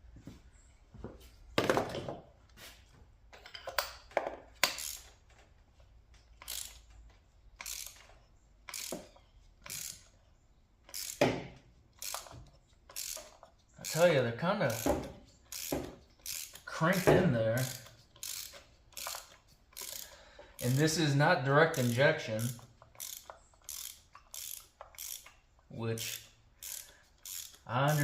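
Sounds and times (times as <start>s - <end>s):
ratchet wrench clicking: 3.4s - 5.2s, 6.4s - 7.0s, 7.6s - 11.3s, 11.9s - 21.0s, 21.7s - 28.0s.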